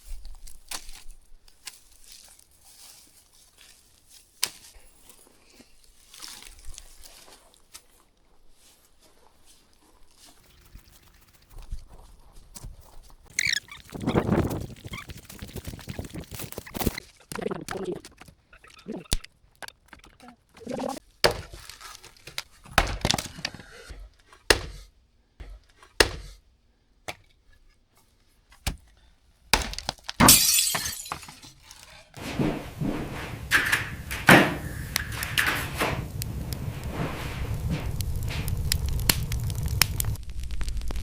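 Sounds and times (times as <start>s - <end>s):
fire crackling: 12.8s - 27.7s, 28.4s - 41.0s
logs thunking into fireplace: 19.1s - 39.2s.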